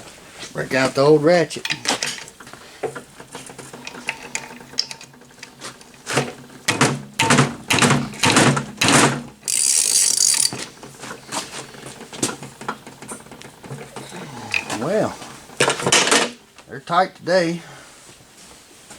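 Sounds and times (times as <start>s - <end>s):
hand ratchet clicking: 7.2s - 11.0s.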